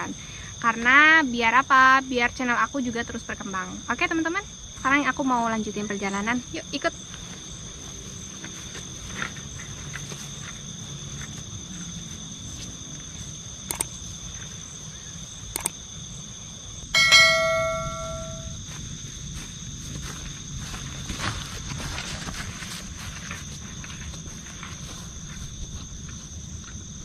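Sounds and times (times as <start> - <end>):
crickets trilling: 0.0 - 27.0
metallic bell-like ring: 17.0 - 18.6.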